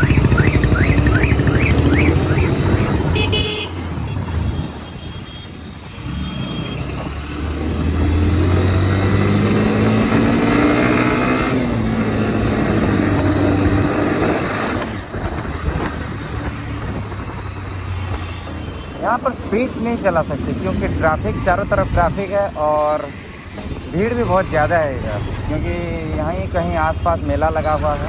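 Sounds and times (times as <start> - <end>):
motorcycle engine accelerating: 0.0 - 3.4, 6.2 - 17.8.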